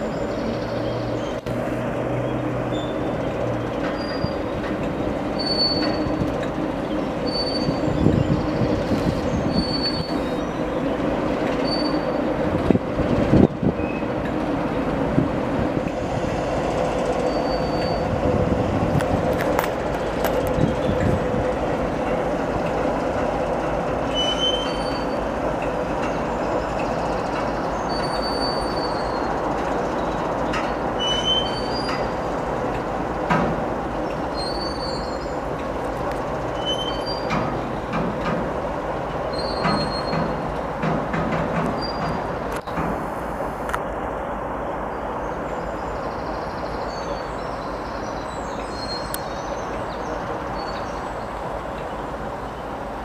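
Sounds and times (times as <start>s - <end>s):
train rolling on rails: 0.0s - 53.0s
wheel squeals: 2.2s - 10.8s, 11.5s - 12.3s, 17.0s - 18.2s, 24.0s - 25.3s, 26.1s - 32.2s, 34.0s - 35.4s, 36.5s - 37.9s, 39.2s - 40.5s, 41.6s - 42.4s.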